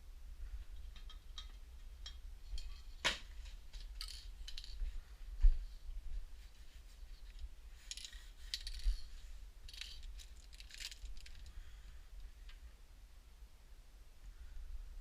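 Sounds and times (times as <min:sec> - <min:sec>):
metal parts clinking: 0:03.7 - 0:04.8, 0:07.2 - 0:11.5.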